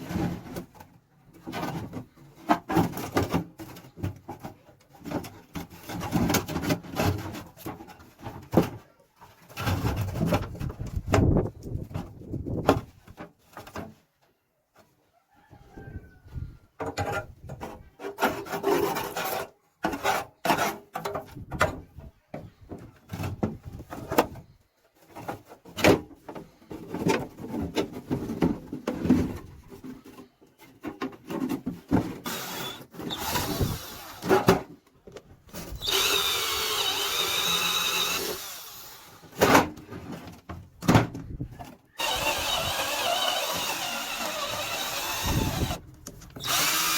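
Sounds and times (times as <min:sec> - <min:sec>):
power tool whining: 0:32.3 - 0:34.3, 0:35.6 - 0:39.3, 0:42.0 - 0:45.8, 0:46.4 - 0:46.9.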